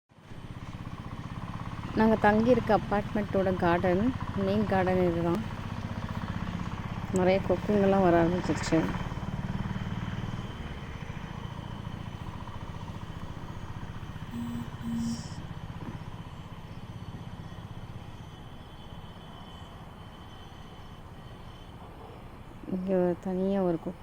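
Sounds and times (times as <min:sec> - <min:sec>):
vehicle engine rumbling: 0:00.1 - 0:24.0
short tones: 0:14.3 - 0:15.4.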